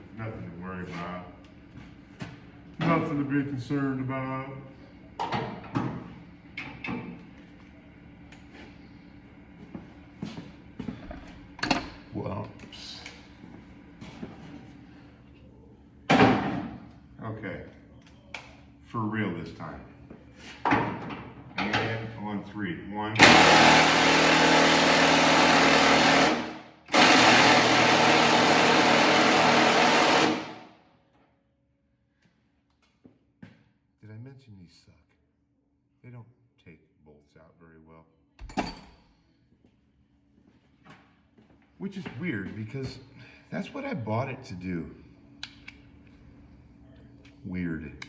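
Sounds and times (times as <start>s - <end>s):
cordless power wrench running: 23.2s - 30.6s.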